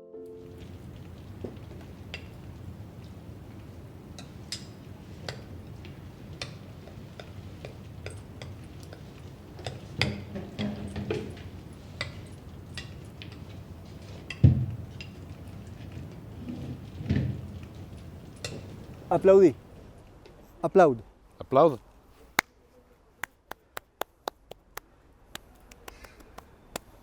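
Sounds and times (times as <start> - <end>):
low room noise: 0.0 - 23.6
light clicks and knocks: 0.4 - 19.6.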